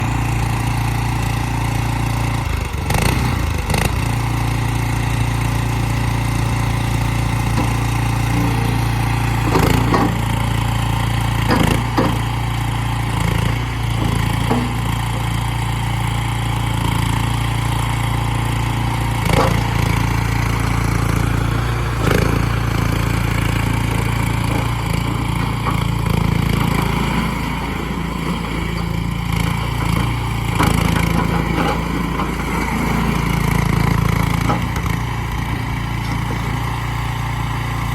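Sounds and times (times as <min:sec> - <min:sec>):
loader engine running: 0:00.0 - 0:37.9
sharp clanks and knocks: 0:09.5 - 0:10.4, 0:11.3 - 0:12.4, 0:19.2 - 0:19.9.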